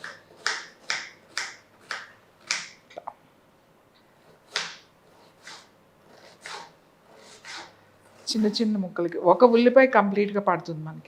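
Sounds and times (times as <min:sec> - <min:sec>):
knife chopping onion: 0:00.0 - 0:02.8, 0:04.2 - 0:07.8.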